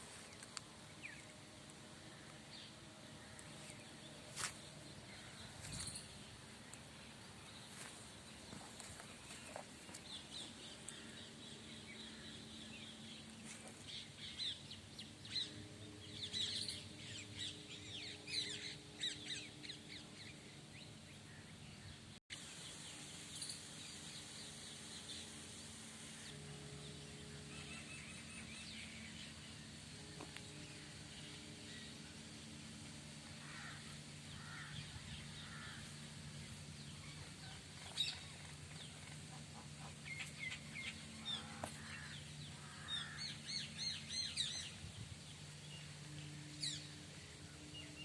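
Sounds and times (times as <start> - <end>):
small birds chirping: 0.0 - 32.4
faint low hum: 0.0 - 48.0.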